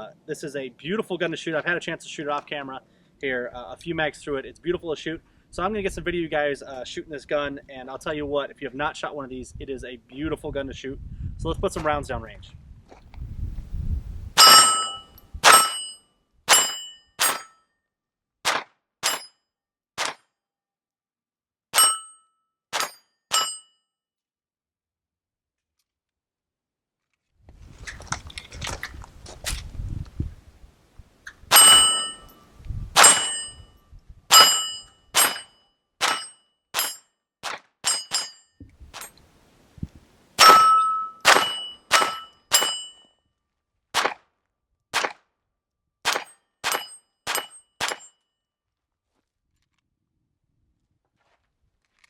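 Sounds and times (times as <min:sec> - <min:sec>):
metallic ring of steel target: 0:14.4 - 0:17.6, 0:19.0 - 0:19.4, 0:21.8 - 0:22.2, 0:22.8 - 0:23.8, 0:31.5 - 0:32.4, 0:33.0 - 0:37.0, 0:37.8 - 0:39.1, 0:40.4 - 0:43.1, 0:46.1 - 0:48.2
pistol shots: 0:18.5 - 0:19.2, 0:33.0 - 0:33.5, 0:34.3 - 0:38.2, 0:40.4 - 0:42.8, 0:44.0 - 0:44.2, 0:45.0 - 0:45.2, 0:46.1 - 0:48.1
handling rustle: 0:27.0 - 0:30.2.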